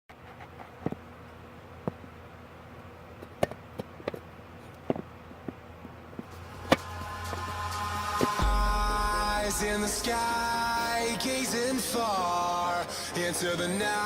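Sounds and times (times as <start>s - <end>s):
faint low hum: 0.2s - 14.0s.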